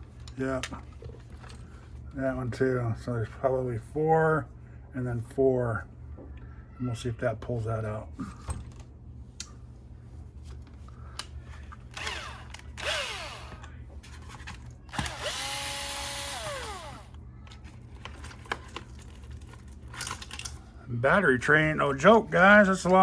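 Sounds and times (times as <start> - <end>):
power screwdriver motor whine: 11.9 - 13.6, 14.9 - 17.2.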